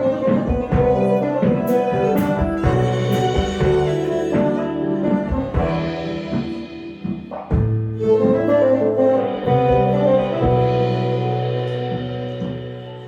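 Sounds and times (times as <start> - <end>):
drum hits: 0.0 - 8.6
clarinet: 0.0 - 13.0
guitar: 0.0 - 13.0
violin: 0.0 - 13.0.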